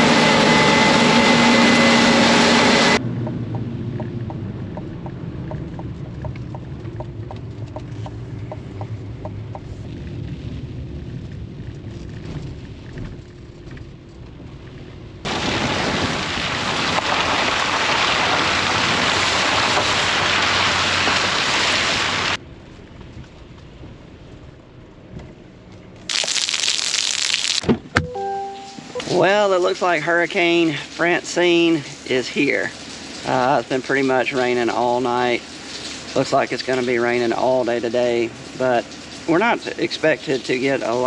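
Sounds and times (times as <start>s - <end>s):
engine running with ticking: 0.0s - 15.3s, 29.0s - 41.0s
heavy rain pouring: 4.4s - 22.4s, 26.1s - 41.0s.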